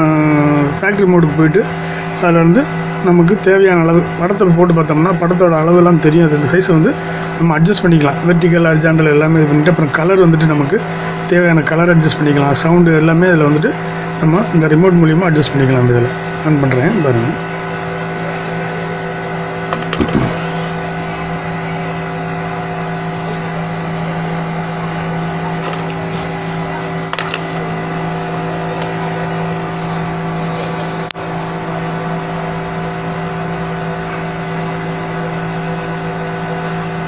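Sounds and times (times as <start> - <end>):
electrical machine hum: 0.0 - 37.0
brief knocks: 19.8 - 20.5.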